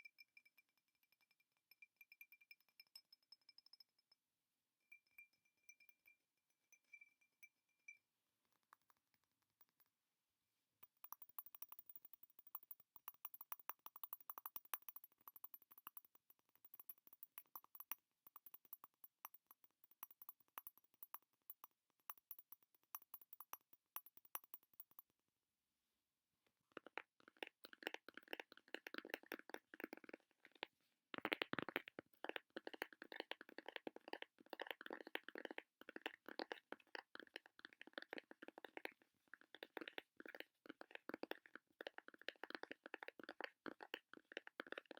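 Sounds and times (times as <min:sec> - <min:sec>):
fast tapping close to microphone: 0:10.8 - 0:25.0, 0:26.8 - 0:44.9.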